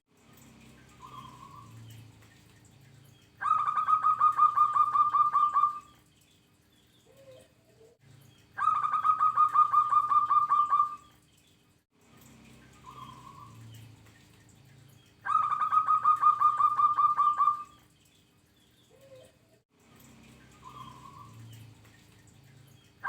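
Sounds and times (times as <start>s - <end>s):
dove cooing: 3.4s - 6.0s, 7.0s - 8.0s, 8.6s - 11.1s, 15.3s - 17.8s.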